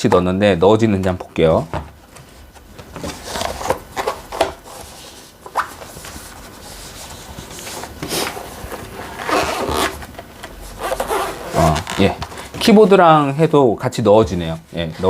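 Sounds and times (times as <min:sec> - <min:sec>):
case scraping against device: 0:03.0 - 0:12.8.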